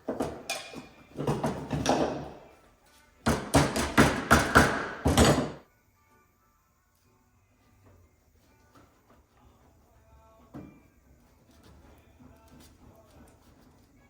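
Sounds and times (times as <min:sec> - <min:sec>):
sharp knocks on hard objects: 0:00.1 - 0:02.4, 0:03.2 - 0:05.6.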